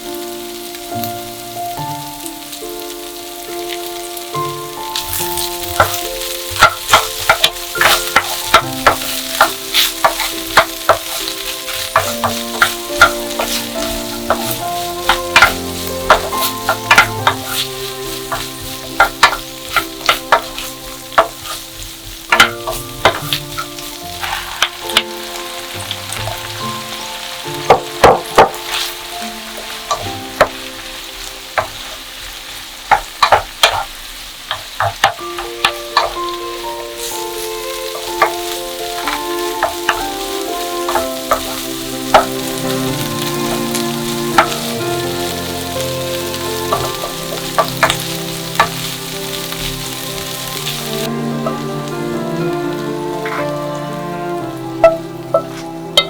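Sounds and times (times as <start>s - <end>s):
food sizzling in a pan: 0.0s - 56.0s
utensil tapping against pan: 5.0s - 23.9s, 27.6s - 28.9s, 32.9s - 33.9s, 34.5s - 49.8s, 54.8s - 56.0s.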